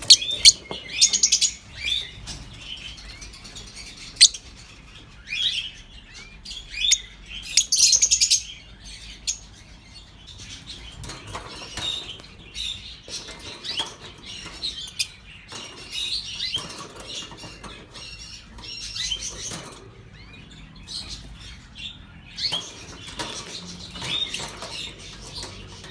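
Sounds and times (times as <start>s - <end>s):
lovebirds chirping and chattering: 0.0s - 25.9s.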